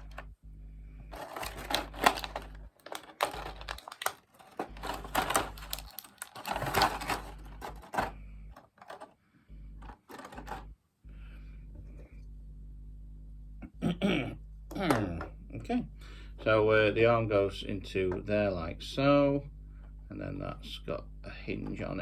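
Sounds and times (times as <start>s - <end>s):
plastic model parts clicking: 1.1s - 9.1s.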